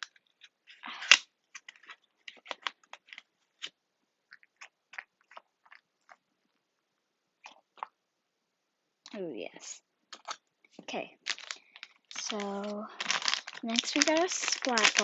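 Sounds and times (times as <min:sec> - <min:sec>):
packaging crinkling: 0:00.0 - 0:03.7, 0:11.2 - 0:15.0.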